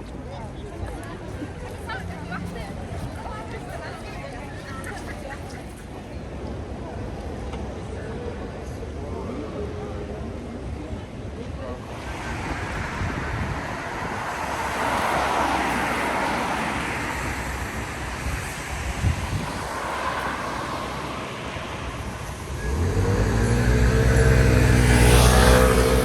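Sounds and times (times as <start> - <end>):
heavy vehicle engine drone: 11.7 - 26.0
cars passing on wet road: 11.8 - 26.0.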